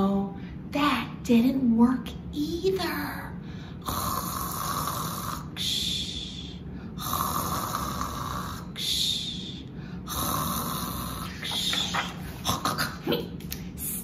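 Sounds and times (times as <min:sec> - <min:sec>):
person imitating snoring: 0:03.8 - 0:09.2, 0:10.0 - 0:11.5.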